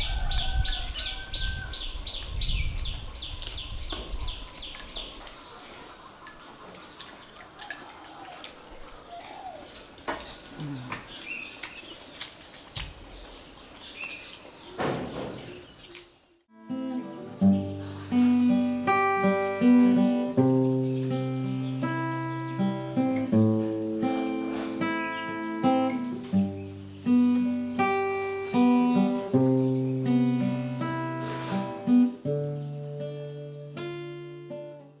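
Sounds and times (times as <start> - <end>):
acoustic guitar: 16.5 - 35.0.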